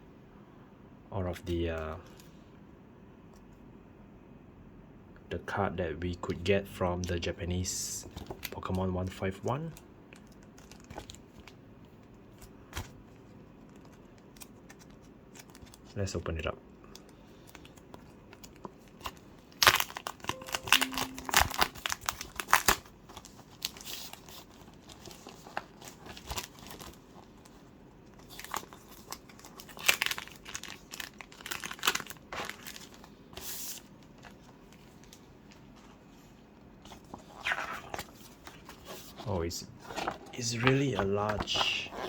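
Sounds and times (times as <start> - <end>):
paper and packaging crinkling: 9.7 - 11.6, 13.6 - 16.0, 16.9 - 35.6.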